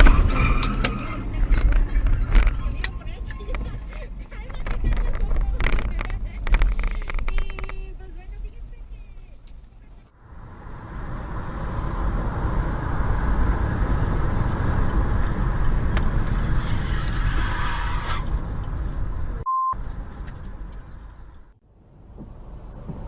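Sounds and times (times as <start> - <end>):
car engine and road noise: 0.0 - 23.0
short high beep: 19.5 - 19.8.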